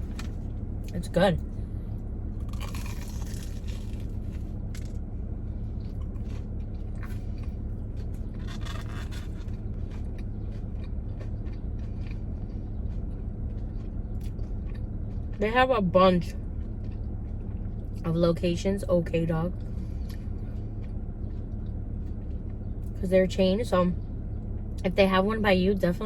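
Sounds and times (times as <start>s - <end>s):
person chewing crunchy food: 0.0s - 1.0s, 2.2s - 18.1s, 19.5s - 23.0s
steady low hum: 0.0s - 26.0s.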